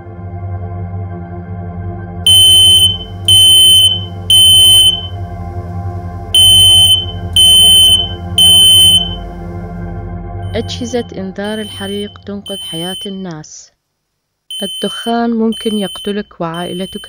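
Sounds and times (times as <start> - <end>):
organ-like music: 1.3 - 12.6
smoke alarm beeps: 2.3 - 5.2, 6.4 - 9.3, 10.5 - 13.2, 14.5 - 17.0.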